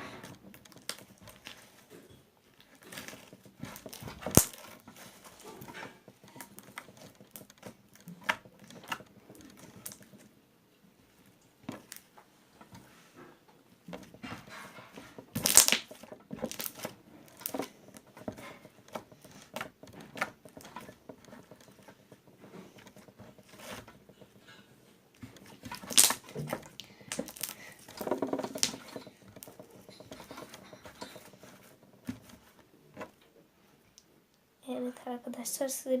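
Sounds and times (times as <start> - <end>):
slime squeezed and stretched: 25.8 - 26.2.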